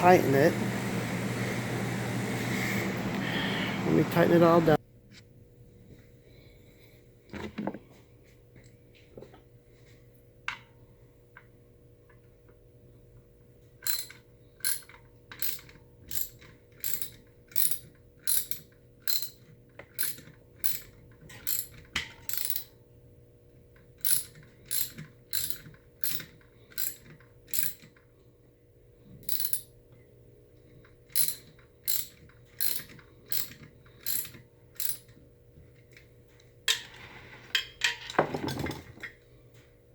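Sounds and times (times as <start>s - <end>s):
ratchet wrench clicking: 13.8s - 19.4s, 20.0s - 22.7s, 24.0s - 27.9s, 29.3s - 29.7s, 31.1s - 35.1s.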